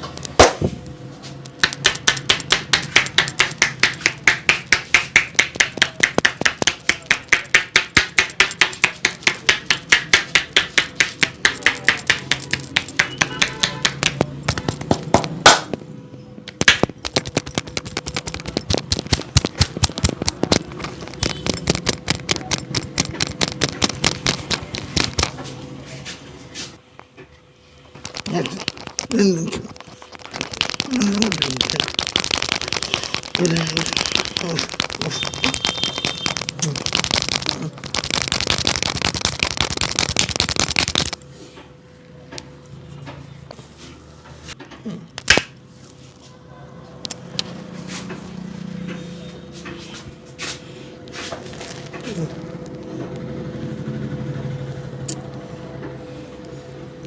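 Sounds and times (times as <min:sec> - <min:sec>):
rhythmic massage hand slaps: 0:01.6 - 0:15.8, 0:16.5 - 0:25.4, 0:28.0 - 0:41.2, 0:45.2 - 0:45.6.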